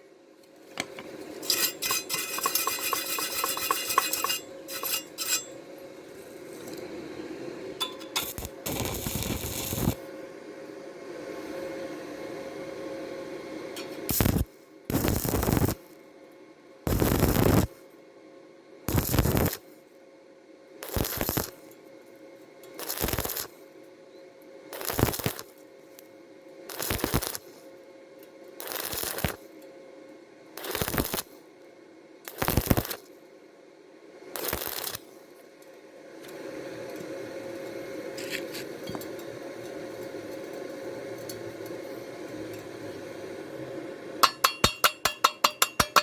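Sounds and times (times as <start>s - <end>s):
faint steady hum: 0.0s - 46.0s
welding arc crackling: 0.8s - 6.8s, 7.8s - 10.0s, 13.9s - 15.9s, 16.9s - 17.7s, 18.9s - 19.6s, 20.8s - 21.6s, 22.7s - 23.6s, 24.7s - 25.7s, 26.7s - 27.6s, 28.6s - 29.5s, 30.6s - 31.4s, 32.3s - 33.1s, 34.3s - 35.5s, 44.2s - 46.0s.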